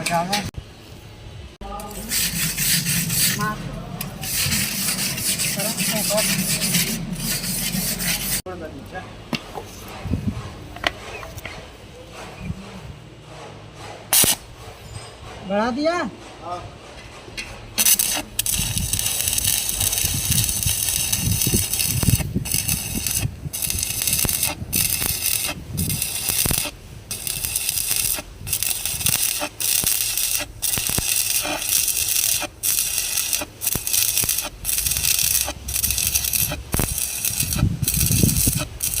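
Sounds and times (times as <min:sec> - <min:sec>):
welding arc crackling and hissing: 0:01.6 - 0:08.4, 0:14.1 - 0:14.5, 0:17.8 - 0:39.0.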